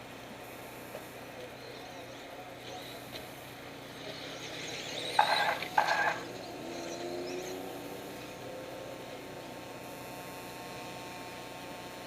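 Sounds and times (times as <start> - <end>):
radio-controlled trucks racing: 0.6 - 11.1.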